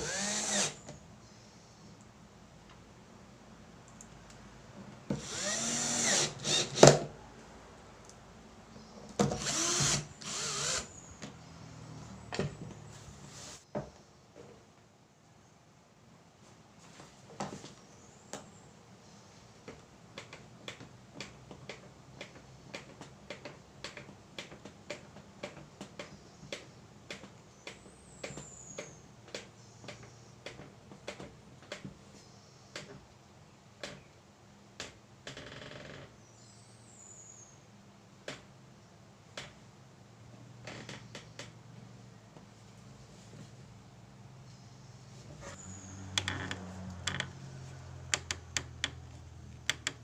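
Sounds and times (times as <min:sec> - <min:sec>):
light sharp knocks and clicks: 0:48.1 - 0:50.0.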